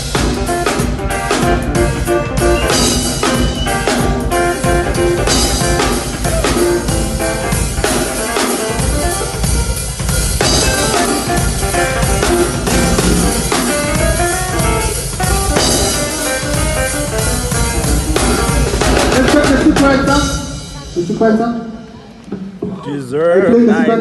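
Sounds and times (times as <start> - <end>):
drum kit groove: 0.0 - 22.8
melodic backing music: 0.0 - 22.8.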